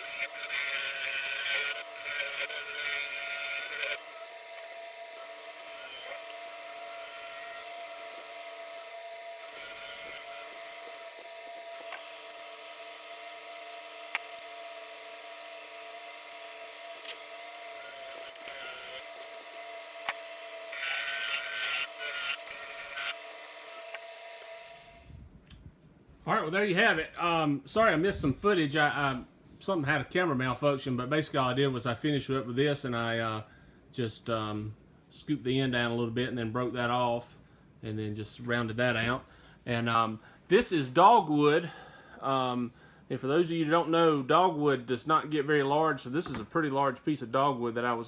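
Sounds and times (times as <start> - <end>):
lathe motor whine: 0.0 - 25.1
turning tool cutting wood: 0.0 - 25.1.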